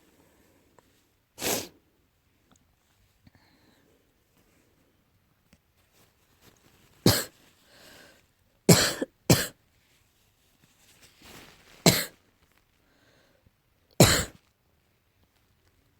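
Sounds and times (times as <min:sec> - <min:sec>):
person coughing: 0:07.1 - 0:07.3, 0:08.7 - 0:09.6, 0:11.9 - 0:12.1, 0:14.0 - 0:14.4.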